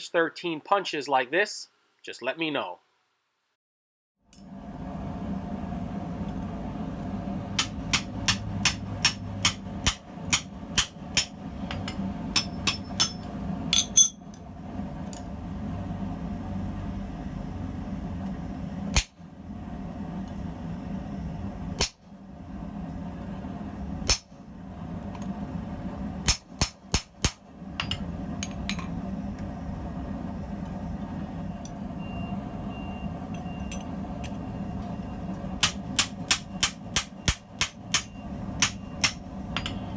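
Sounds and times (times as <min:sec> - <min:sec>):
steady low hum: 0:04.4 - 0:39.9
hammer striking hot steel: 0:07.5 - 0:14.4, 0:18.9 - 0:19.2, 0:21.7 - 0:22.1, 0:24.0 - 0:24.4, 0:26.2 - 0:28.9, 0:35.6 - 0:39.9.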